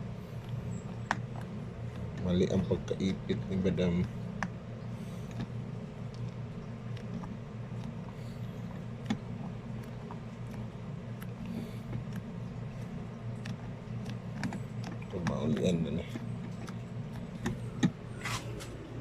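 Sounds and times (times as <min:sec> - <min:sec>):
steady low hum: 0:00.0 - 0:19.0
hardware clicks and taps: 0:05.3 - 0:18.8.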